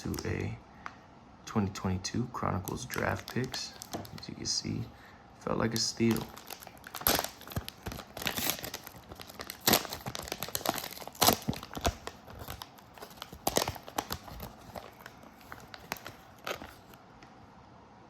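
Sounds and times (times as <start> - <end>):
plastic wrapper tearing and crinkling: 2.7 - 4.8, 5.7 - 17.0.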